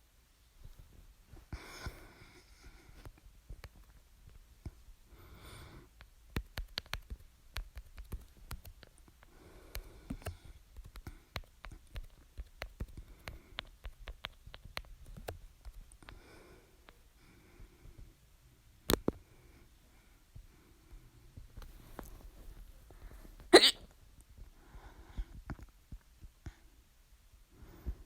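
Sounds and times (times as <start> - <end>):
person breathing: 1.5 - 3.0, 5.1 - 5.9, 9.3 - 11.4
quick irregular sharp clicks: 6.0 - 16.2.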